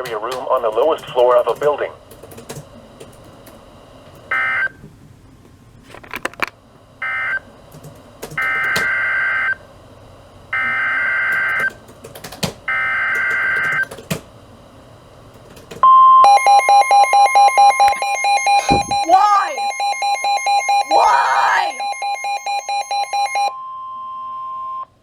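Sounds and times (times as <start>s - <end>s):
steady warning alarm tone: 15.8s - 24.9s
warbling data bursts: 16.3s - 23.5s.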